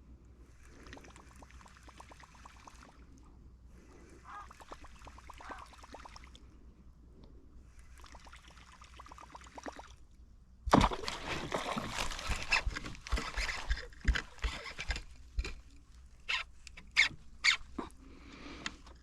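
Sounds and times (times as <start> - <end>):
churning splashing water: 4.2 - 6.4, 7.8 - 10.0, 10.7 - 17.9
fish splashing in water: 10.7 - 14.9.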